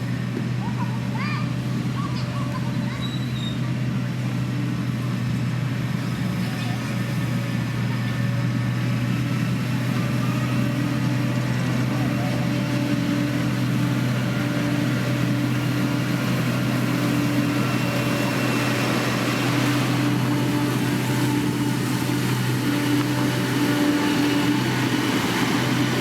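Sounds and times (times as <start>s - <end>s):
heavy diesel engine humming: 0.0s - 26.0s.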